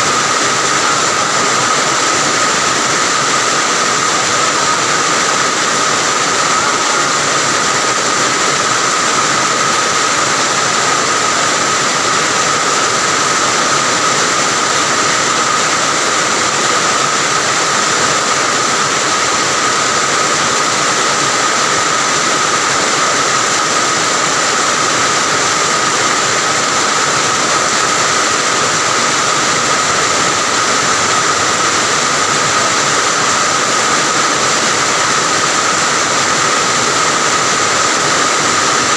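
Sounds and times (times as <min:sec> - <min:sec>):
steady high tone: 0:00.0 - 0:16.9
heavy rain: 0:00.0 - 0:38.9.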